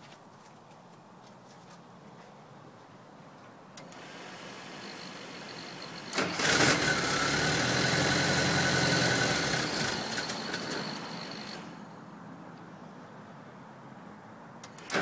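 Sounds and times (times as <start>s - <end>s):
car engine cranking and stalling: 3.8s - 11.8s, 14.6s - 15.0s.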